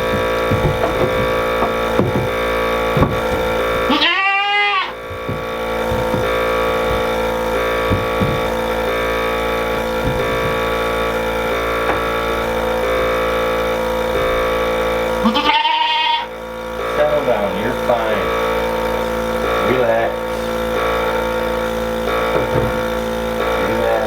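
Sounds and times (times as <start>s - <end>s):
small knocks and shuffles: 0.0s - 4.2s, 4.8s - 12.3s
sustained tones: 0.0s - 15.5s, 16.2s - 24.0s
goat bleating: 3.2s - 6.2s, 15.2s - 16.4s.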